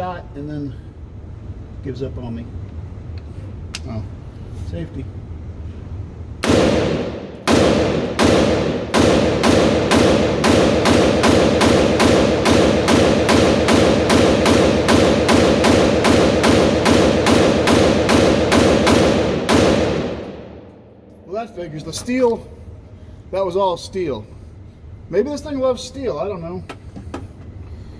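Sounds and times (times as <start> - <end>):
pistol firing shots: 6.4 - 20.7.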